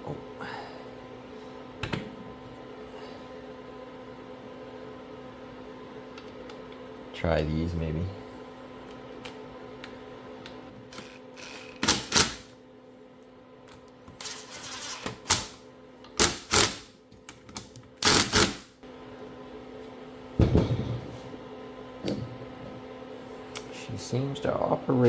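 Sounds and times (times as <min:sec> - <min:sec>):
steady low hum: 0:00.0 - 0:16.6.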